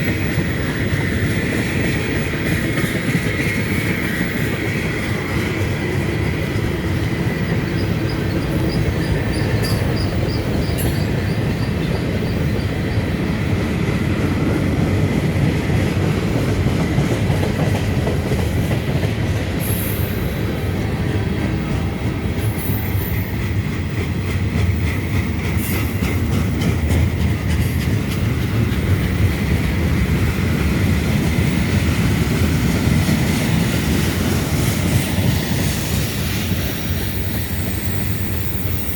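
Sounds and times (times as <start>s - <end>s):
freight train rumbling: 0.0s - 38.9s
wheels clicking over rail joints: 20.8s - 38.8s
high wheel squeals: 22.4s - 23.5s.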